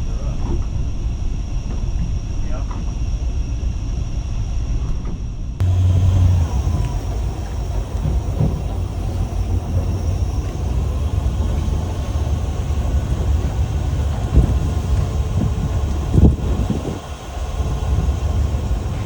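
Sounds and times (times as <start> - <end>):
motorboat engine rumbling: 5.6 - 19.0
water rushing: 5.6 - 19.0
wind noise: 5.6 - 19.0.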